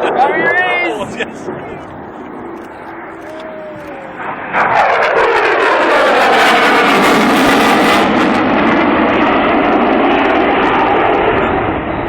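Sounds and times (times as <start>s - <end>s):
jet engines roaring: 0.0s - 12.0s.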